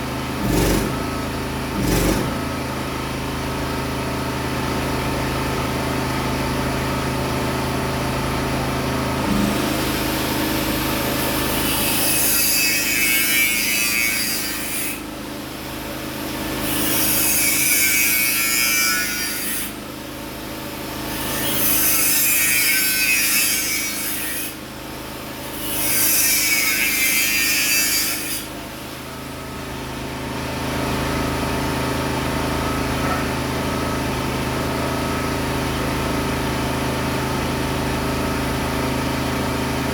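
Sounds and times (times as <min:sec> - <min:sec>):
steady engine hum: 0:00.0 - 0:09.4
power tool cutting material: 0:00.3 - 0:02.7, 0:09.2 - 0:15.1, 0:16.2 - 0:19.8, 0:20.6 - 0:24.6, 0:25.3 - 0:29.0.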